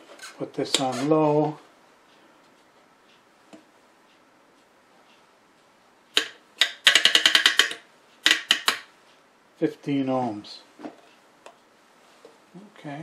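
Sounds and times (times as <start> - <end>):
rotary switch clicking: 6.2 - 8.9.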